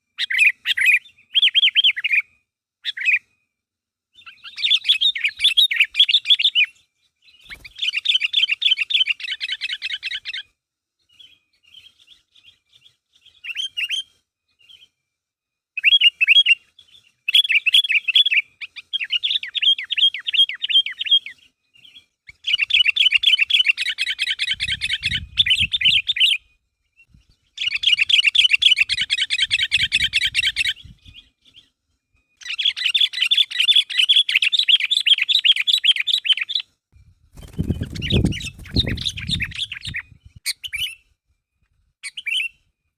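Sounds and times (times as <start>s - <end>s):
bulbul singing chattering phrases: 37.4s - 41.0s.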